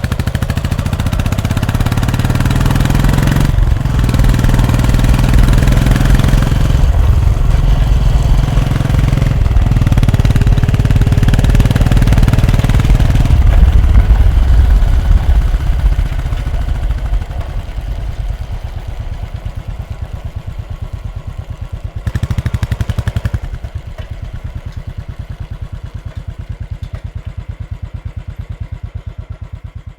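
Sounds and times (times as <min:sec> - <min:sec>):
motorcycle engine revving and idling: 0:00.0 - 0:29.9.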